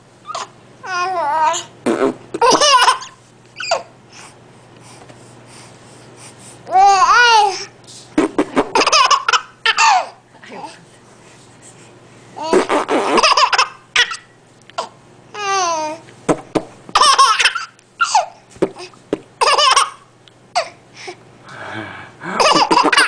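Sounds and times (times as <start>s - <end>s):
baby laughing: 0.3s - 3.9s, 8.2s - 10.2s, 12.4s - 16.0s, 16.9s - 20.7s, 22.4s - 23.0s.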